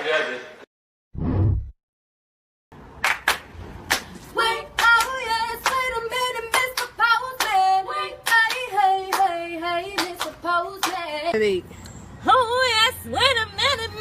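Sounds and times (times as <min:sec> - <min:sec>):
rhythmic hand claps: 0:03.0 - 0:11.2.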